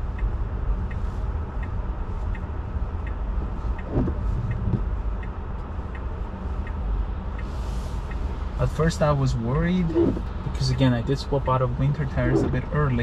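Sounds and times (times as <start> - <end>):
light regular ticking: 0.0 - 8.6
road and tyre rumble: 0.0 - 13.0.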